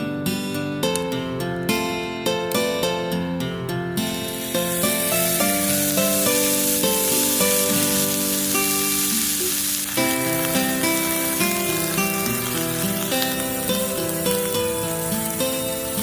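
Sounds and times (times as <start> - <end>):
melodic background music: 0.6 - 16.0
food sizzling in a pan: 4.1 - 16.0.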